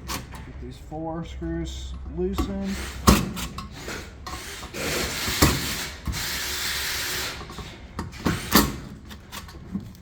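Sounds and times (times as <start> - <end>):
cordless drill running: 4.4 - 7.5.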